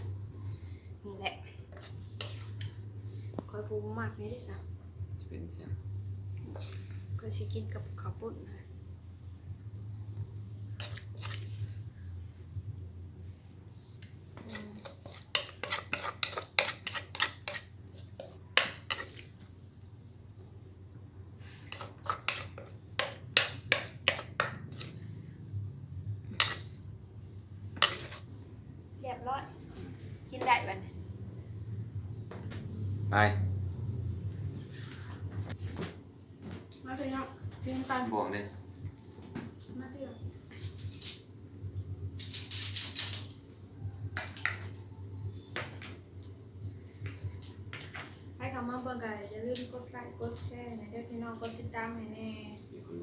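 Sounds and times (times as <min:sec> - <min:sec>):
utensils clinking in a mortar: 0:42.2 - 0:43.4.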